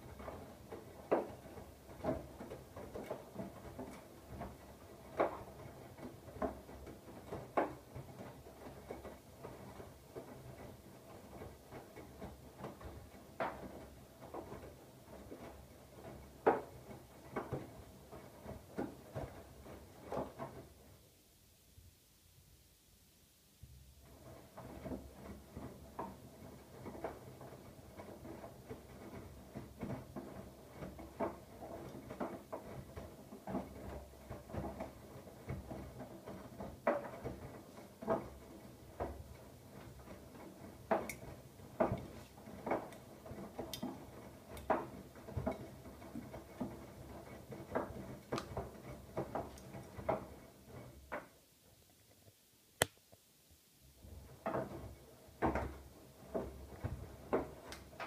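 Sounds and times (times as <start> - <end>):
tumbling load knocks and clicks: 24.1 - 51.4.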